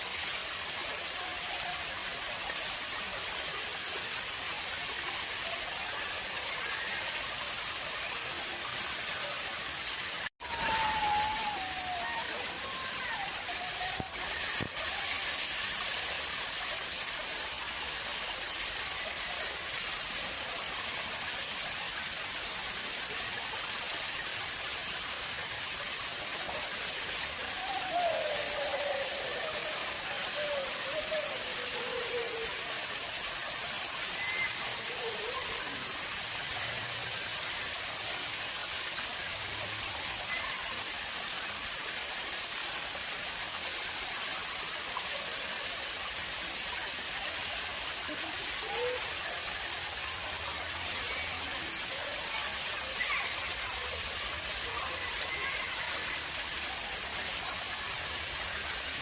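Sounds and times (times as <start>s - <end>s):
water falling and splashing: 0.0s - 59.0s.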